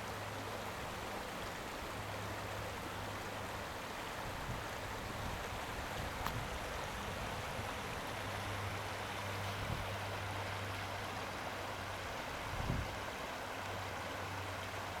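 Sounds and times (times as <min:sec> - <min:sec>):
flowing creek water: 0:00.0 - 0:15.0.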